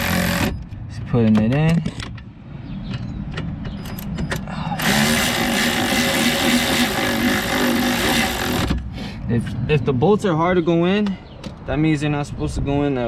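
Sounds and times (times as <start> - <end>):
rushing mechanical noise: 0.0 - 0.8, 3.8 - 8.9.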